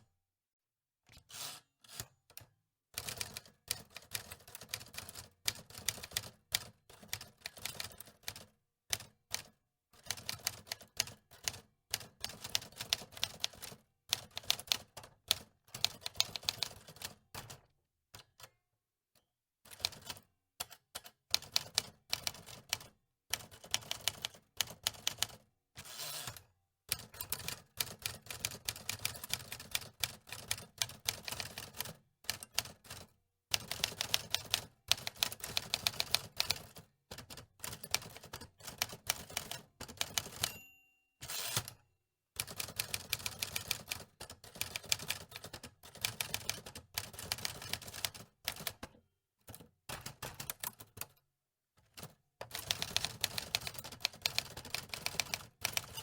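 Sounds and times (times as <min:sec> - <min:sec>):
typewriter keys clacking: 0:52.5 - 0:56.0.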